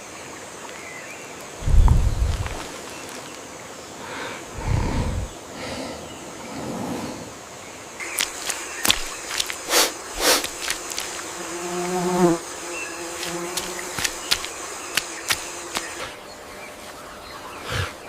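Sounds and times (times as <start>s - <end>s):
faint high insect hum: 0.0s - 18.0s
insects buzzing: 0.0s - 18.0s
loud pitched insect buzz: 1.6s - 3.4s, 8.0s - 16.2s.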